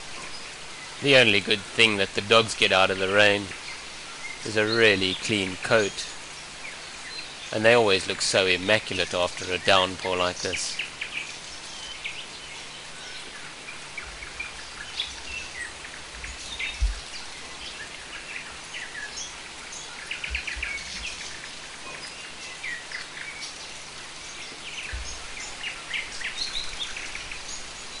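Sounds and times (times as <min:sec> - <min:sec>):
birds chirping: 0:00.0 - 0:28.0
rain falling: 0:00.0 - 0:28.0
dull low thumps: 0:16.1 - 0:17.2, 0:20.3 - 0:21.2, 0:24.9 - 0:25.4.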